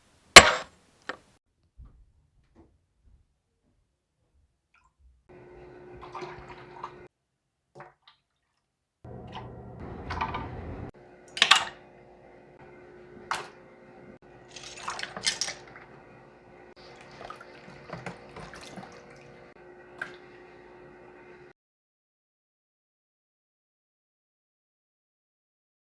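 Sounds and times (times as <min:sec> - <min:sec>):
water splashes and drips: 0:05.9 - 0:07.1, 0:09.2 - 0:10.4, 0:14.4 - 0:16.1, 0:16.7 - 0:20.6.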